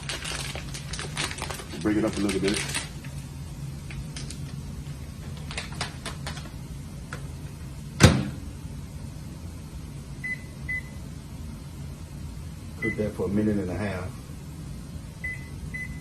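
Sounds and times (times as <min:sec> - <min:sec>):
steady low hum: 0:00.0 - 0:16.0
microwave door thumping shut: 0:08.0 - 0:08.4.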